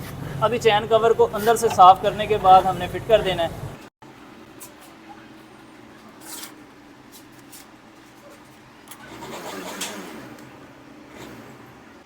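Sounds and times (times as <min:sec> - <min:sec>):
rough scraping rub: 0:06.2 - 0:10.3.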